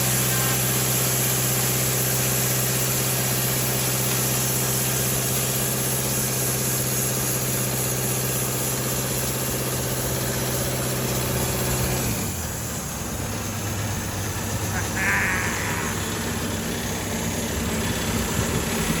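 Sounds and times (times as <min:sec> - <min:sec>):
sawmill engine running: 0:00.0 - 0:19.0
high-pitched squawk: 0:14.6 - 0:16.4.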